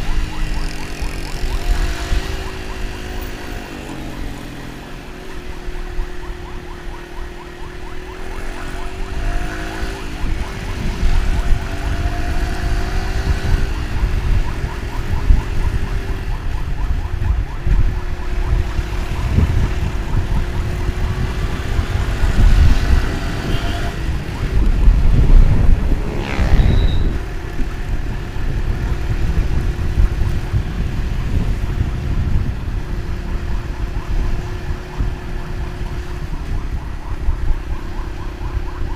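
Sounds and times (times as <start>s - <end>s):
wind rumble on microphone: 0.0s - 38.9s.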